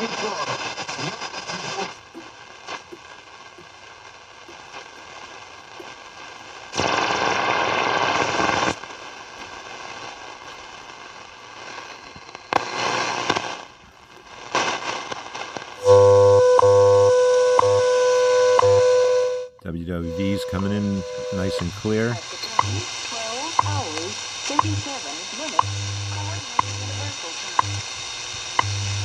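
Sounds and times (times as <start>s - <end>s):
steady radio tone: 0.0s - 13.6s, 14.5s - 29.0s
loud rushes of hiss: 0.0s - 15.9s
radio static and crackle: 0.0s - 29.0s
time signal ticks: 15.8s - 29.0s.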